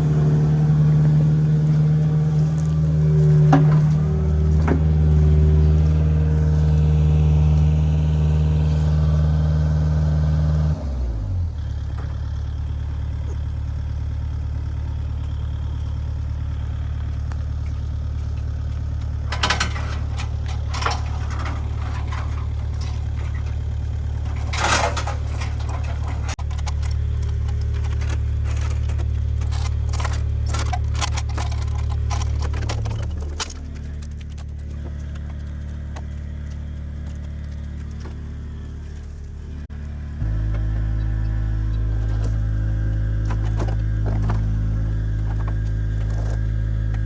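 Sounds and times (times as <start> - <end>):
engine running and idling: 0.0 - 47.0
short clatters: 16.7 - 39.7.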